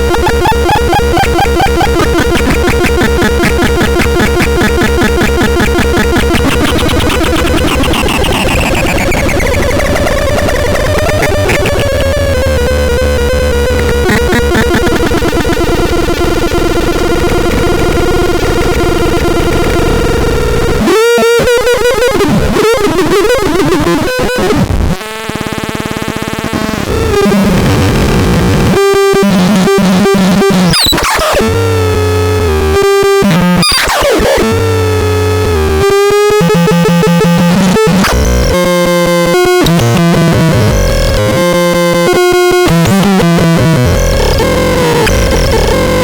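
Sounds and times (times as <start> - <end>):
low pulsing bass notes: 0.0 - 15.7
harsh electronic synthesizer: 0.0 - 46.0.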